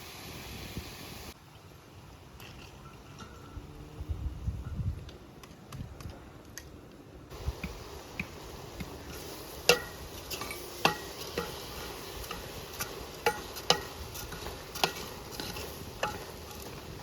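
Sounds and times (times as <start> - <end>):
faint steady hiss: 0.0 - 5.8, 6.5 - 17.0
utensil clinking in cooking pot: 9.6 - 16.9.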